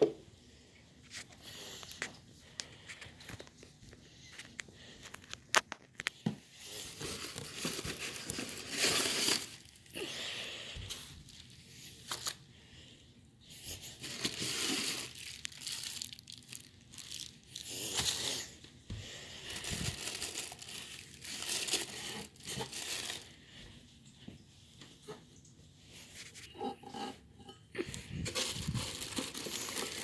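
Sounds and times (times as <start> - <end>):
packing material crinkling and tearing: 5.0 - 10.1, 11.2 - 12.4, 13.8 - 18.6, 19.4 - 23.4, 27.8 - 30.0.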